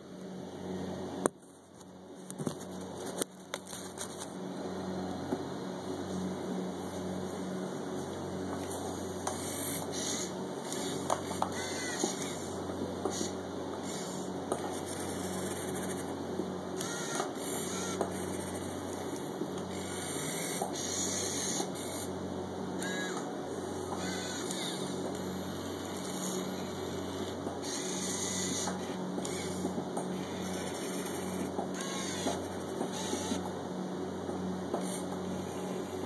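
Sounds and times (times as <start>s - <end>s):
small motors whirring: 9.2s - 16.2s, 16.8s - 22.2s, 22.8s - 33.5s, 34.7s - 36.0s.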